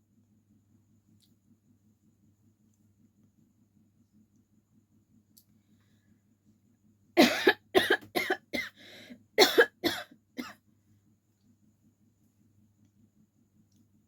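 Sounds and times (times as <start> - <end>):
person coughing: 7.2 - 8.8, 9.4 - 10.6.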